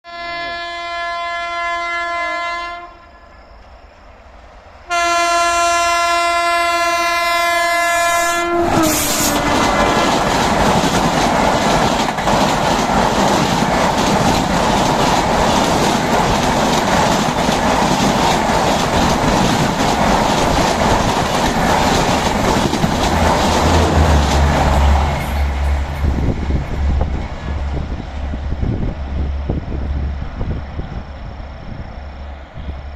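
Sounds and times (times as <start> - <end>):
locomotive horn blasts: 0.0 - 3.4, 4.9 - 10.0
train coaches rushing past: 7.7 - 32.9
wheel clatter over rail joints: 9.0 - 27.8.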